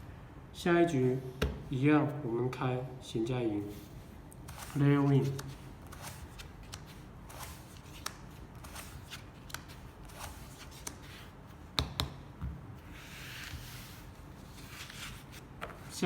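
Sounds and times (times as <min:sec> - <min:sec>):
playing cards flicking and sliding: 0:03.8 - 0:11.4, 0:12.9 - 0:15.9.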